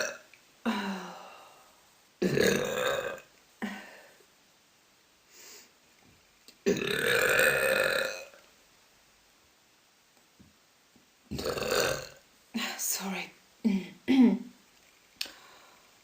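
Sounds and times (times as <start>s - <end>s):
woman burping: 0.0s - 1.2s, 2.2s - 4.0s, 6.6s - 8.4s, 11.3s - 12.2s, 13.8s - 14.5s.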